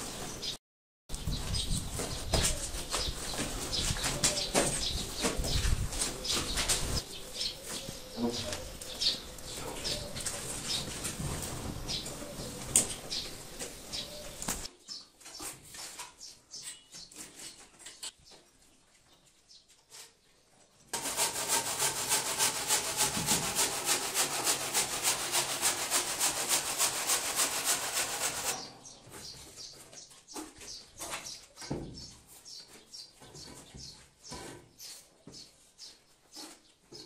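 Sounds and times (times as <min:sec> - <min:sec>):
fast back-and-forth rubbing: 0:21.0 - 0:28.7.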